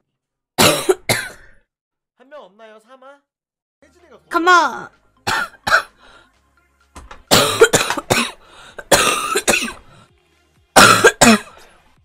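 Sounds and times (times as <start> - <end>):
girl coughing: 0.6 - 1.6, 5.3 - 5.9, 7.3 - 9.8, 10.8 - 11.6.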